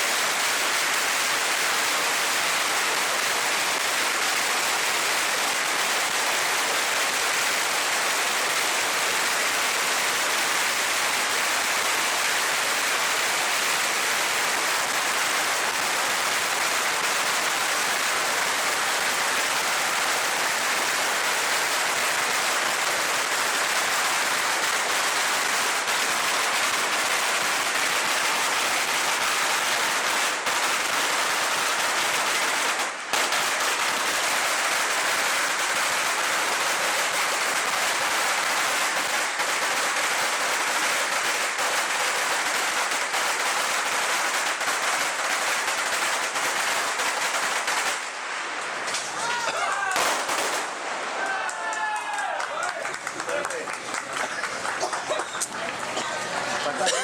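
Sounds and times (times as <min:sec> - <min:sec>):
firecrackers crackling: 0:00.0 - 0:57.0.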